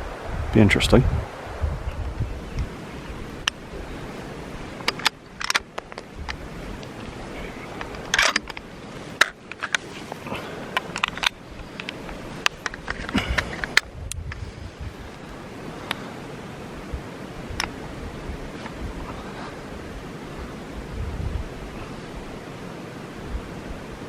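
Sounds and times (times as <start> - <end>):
wind hiss: 0.0 - 24.0
handling noise clicks and scrapes: 3.5 - 15.2.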